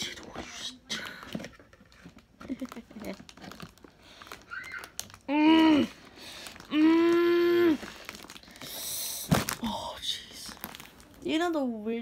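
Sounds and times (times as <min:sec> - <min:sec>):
cardboard packaging rustling: 0:01.0 - 0:11.6
boy straining hums: 0:04.5 - 0:06.0, 0:06.7 - 0:07.9.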